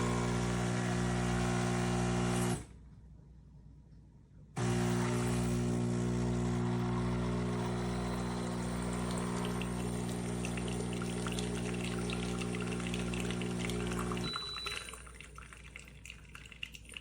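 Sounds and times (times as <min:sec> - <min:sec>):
espresso machine pump humming: 0:00.0 - 0:02.6, 0:04.6 - 0:15.4
liquid pouring and trickling: 0:08.7 - 0:17.0.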